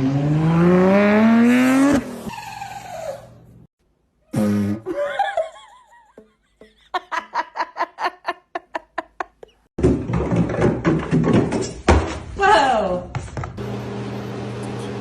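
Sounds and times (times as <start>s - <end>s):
person laughing: 4.8s - 9.7s.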